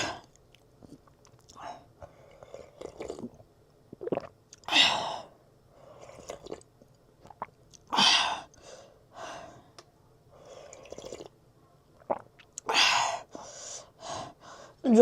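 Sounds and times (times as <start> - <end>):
person chewing food: 0.2 - 3.4, 4.0 - 4.7, 6.0 - 8.6.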